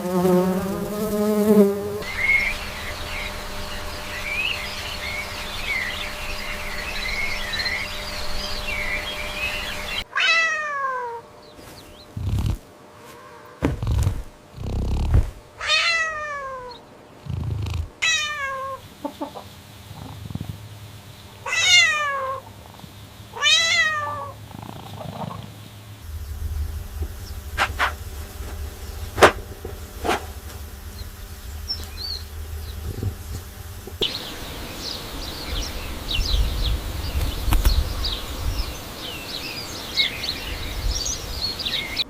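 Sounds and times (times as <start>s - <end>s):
birds chirping: 0.0s - 10.1s, 11.2s - 42.0s
cat meowing: 10.1s - 11.2s, 15.6s - 16.8s, 18.0s - 18.8s, 21.4s - 22.5s, 23.4s - 24.4s
low thuds: 13.6s - 15.5s, 26.0s - 34.1s.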